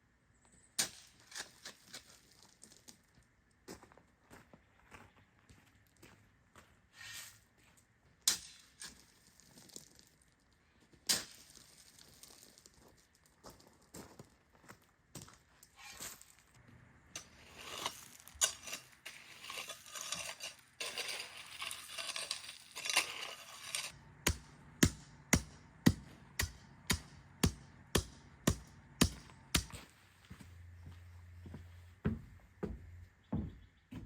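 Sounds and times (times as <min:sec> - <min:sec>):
clattering and scraping: 0:17.2 - 0:24.4
sharp knocks: 0:24.2 - 0:29.8.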